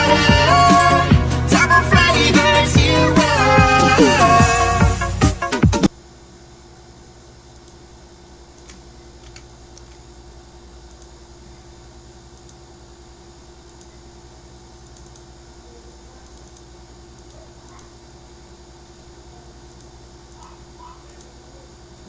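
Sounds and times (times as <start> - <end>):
electrical hum: 0.0 - 22.0
computer keyboard and mouse clicks: 8.6 - 10.0, 14.8 - 15.3, 16.2 - 17.9.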